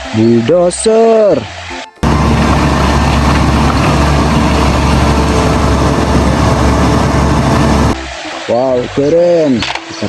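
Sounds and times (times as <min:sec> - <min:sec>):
heavy diesel engine running: 0:02.0 - 0:08.0.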